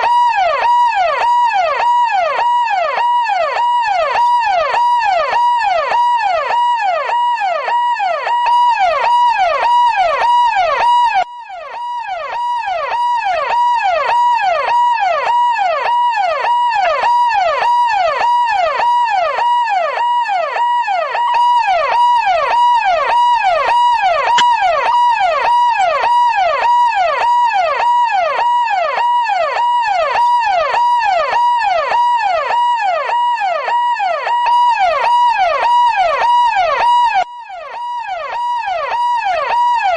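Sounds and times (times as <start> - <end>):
electronic police siren yelping: 0.0 - 39.9.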